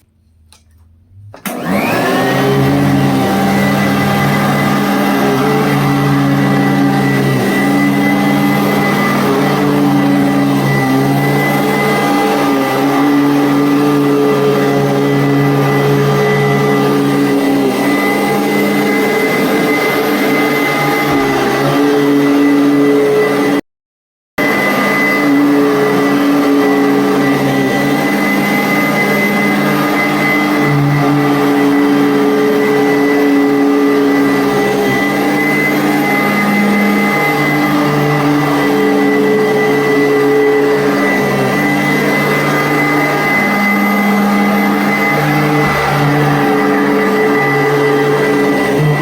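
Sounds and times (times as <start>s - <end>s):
vacuum cleaner motor whine: 1.3s - 23.6s, 24.4s - 49.0s.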